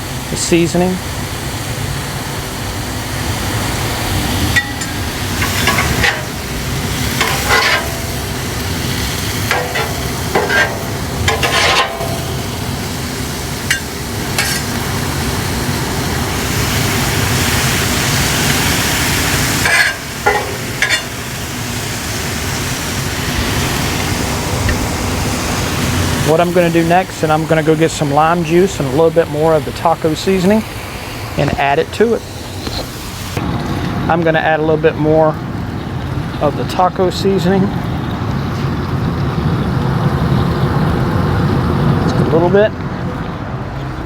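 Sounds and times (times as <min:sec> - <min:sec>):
steak and onions sizzling on griddle: 0:00.0 - 0:34.0
metal spatula scraping steel plate: 0:04.6 - 0:06.5, 0:07.1 - 0:08.4, 0:09.4 - 0:12.4, 0:13.7 - 0:14.8, 0:19.6 - 0:21.2.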